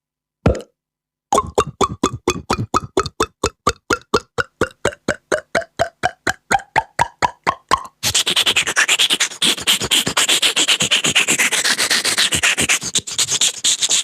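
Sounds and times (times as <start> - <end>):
scratchy rubbing rasp: 8.0 - 14.0.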